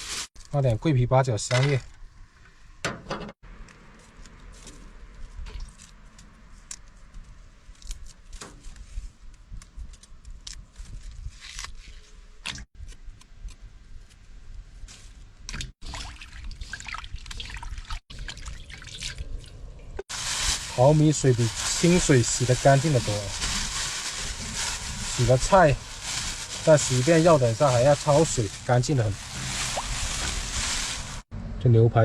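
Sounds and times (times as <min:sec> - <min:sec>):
water splashing and dripping: 0:15.5 - 0:20.8, 0:27.7 - 0:31.2.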